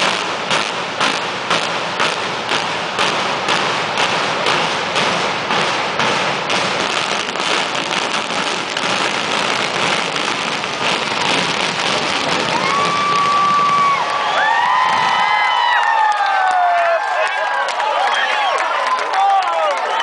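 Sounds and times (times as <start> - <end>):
demolition charges banging: 0.0 - 15.4.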